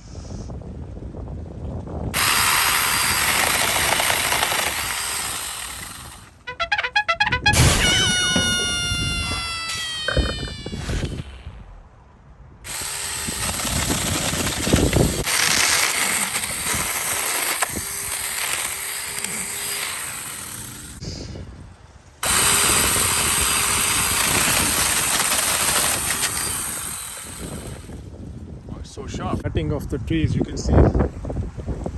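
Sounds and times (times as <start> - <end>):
chainsaw cutting wood: 2.2 - 11.9, 12.7 - 21.0, 22.2 - 28.0
electric chainsaw whining: 2.2 - 11.9, 12.7 - 21.0, 22.2 - 28.0.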